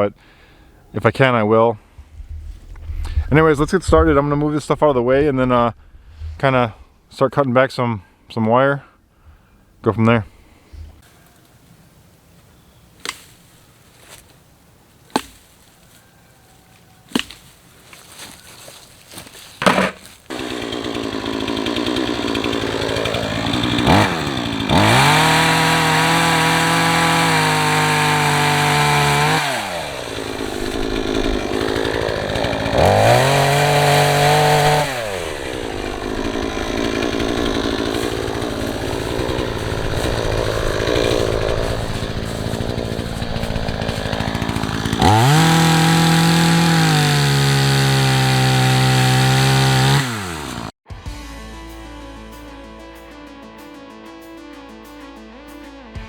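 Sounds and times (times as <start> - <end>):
chainsaw idling and revving: 18.2 - 50.8.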